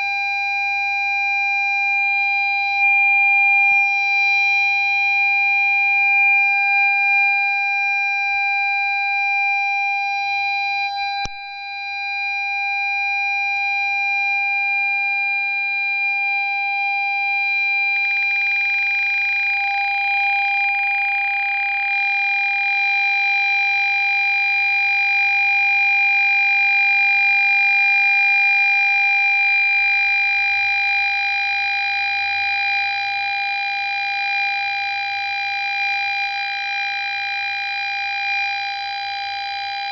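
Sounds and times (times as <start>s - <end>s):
click: 11.2s - 11.4s.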